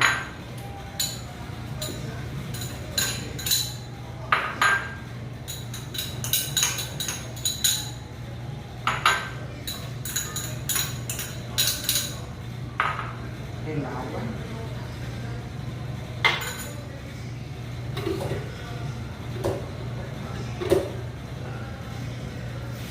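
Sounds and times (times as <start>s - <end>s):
dishes and utensil clinking: 0.0s - 8.1s, 8.8s - 13.2s, 16.2s - 16.9s.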